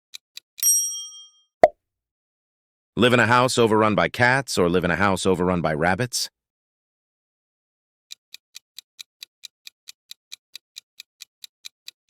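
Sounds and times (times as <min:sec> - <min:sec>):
ticking clock timer: 0:08.1 - 0:12.0.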